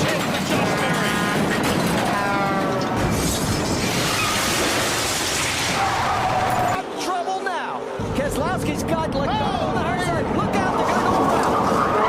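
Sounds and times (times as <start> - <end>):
car crash crunching and shattering: 0.0 - 6.8.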